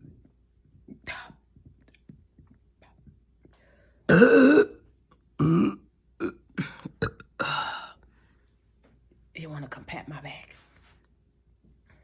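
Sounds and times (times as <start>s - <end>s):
woman burping: 4.1s - 4.8s, 5.4s - 7.6s.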